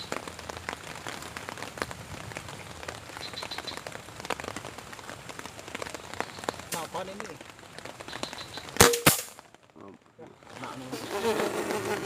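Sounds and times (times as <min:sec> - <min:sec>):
rain falling: 0:00.0 - 0:12.0
drops striking close by: 0:08.7 - 0:09.6.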